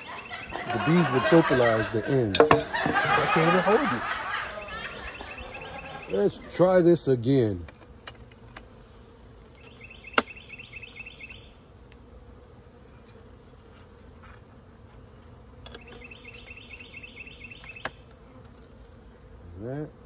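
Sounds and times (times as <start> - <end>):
honeybees buzzing: 0.0 - 20.0
rapid high-pitched chirping: 4.5 - 6.3, 9.6 - 11.5.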